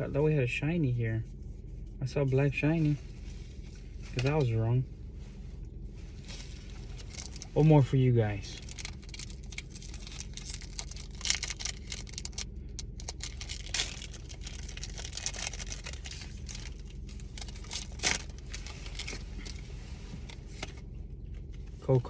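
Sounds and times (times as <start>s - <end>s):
foil wrapper crinkling and tearing: 6.3s - 7.6s, 8.4s - 19.7s.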